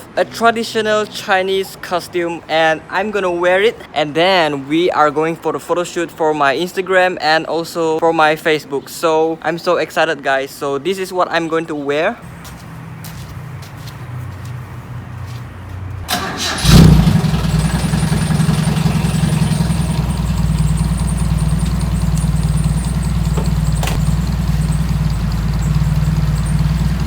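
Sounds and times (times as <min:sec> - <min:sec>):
car engine cranking and idling: 0:16.0 - 0:27.0.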